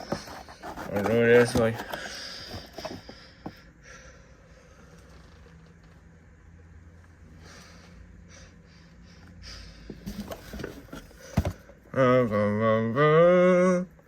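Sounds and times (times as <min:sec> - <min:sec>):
packaging rustling and clicking: 0:00.0 - 0:03.1.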